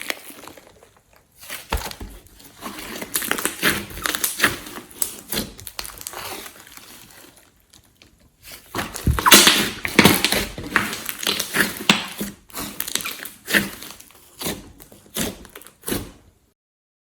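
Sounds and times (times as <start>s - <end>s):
slime squelching: 0.0s - 16.4s
air bubble pops: 9.0s - 10.3s.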